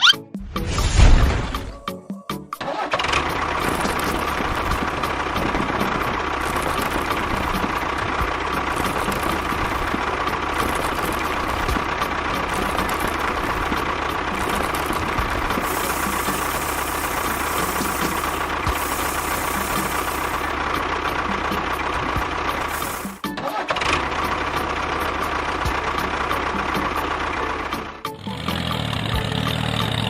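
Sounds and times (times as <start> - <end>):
motor running with constant whine: 3.2 - 23.2.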